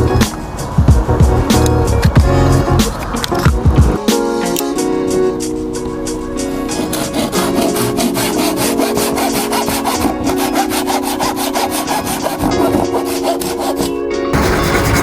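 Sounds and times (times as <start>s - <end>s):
pull saw cutting wood: 6.7s - 15.0s.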